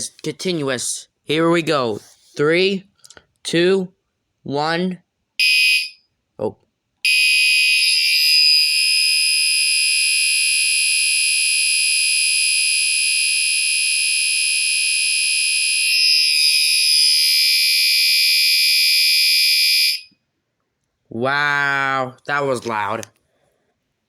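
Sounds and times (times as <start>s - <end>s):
fire alarm horn blast: 7.1s - 20.1s.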